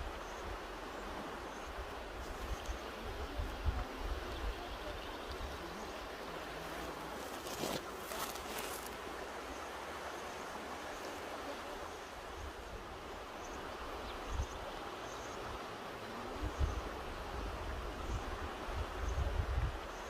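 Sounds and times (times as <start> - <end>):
river rushing over rocks: 0.0 - 20.0
wind buffeting microphone: 16.4 - 19.9.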